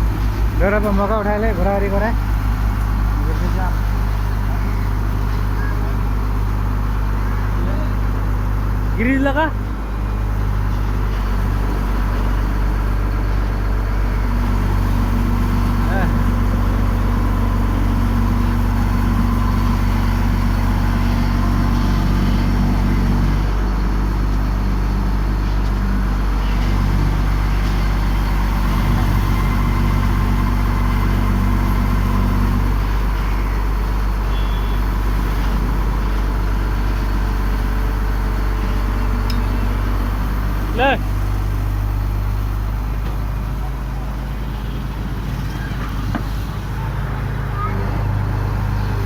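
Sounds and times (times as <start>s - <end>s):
drilling machine engine running: 0.0s - 49.0s.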